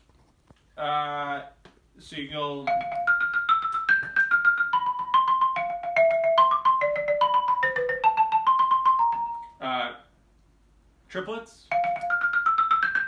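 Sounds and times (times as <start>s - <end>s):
xylophone rolled notes: 2.6s - 9.6s, 11.7s - 13.0s.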